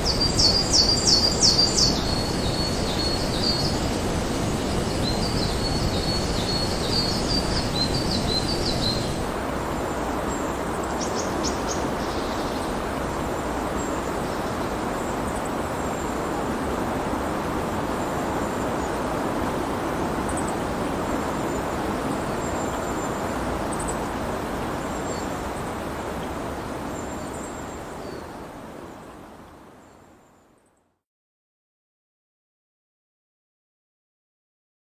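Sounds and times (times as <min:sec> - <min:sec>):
bird chirping: 0:00.0 - 0:09.3
steady rain hiss: 0:00.0 - 0:30.6.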